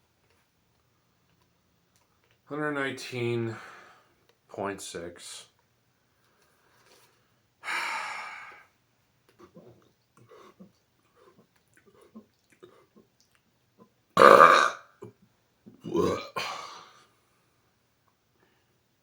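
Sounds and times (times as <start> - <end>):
faint throat and mouth sounds: 9.3 - 16.6
man burping loudly: 14.2 - 14.9, 15.8 - 16.8.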